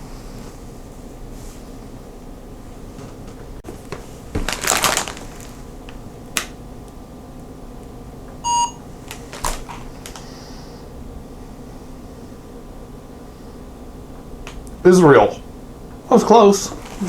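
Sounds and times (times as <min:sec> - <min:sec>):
plastic snack bag crinkling: 0:03.9 - 0:05.8, 0:09.0 - 0:10.2, 0:16.7 - 0:17.0
short electronic beep: 0:08.4 - 0:08.8.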